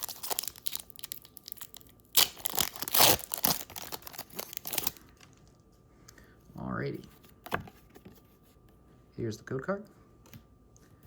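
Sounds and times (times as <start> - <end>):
foil wrapper tearing and crinkling: 0.0 - 5.3.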